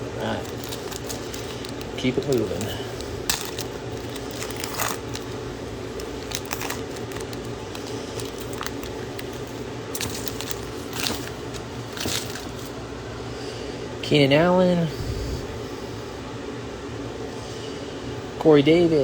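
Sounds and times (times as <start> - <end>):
steady low hum: 0.0 - 19.0
plastic wrapper crinkling and tearing: 0.1 - 12.8.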